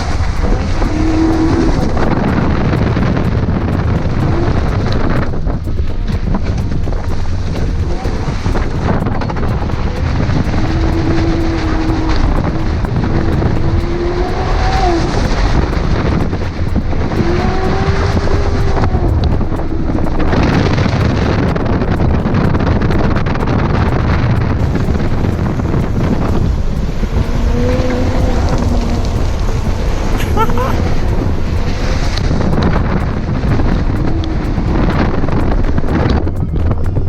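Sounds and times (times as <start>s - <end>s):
car engine revving: 0.0s - 37.0s
wind noise on microphone: 0.0s - 37.0s.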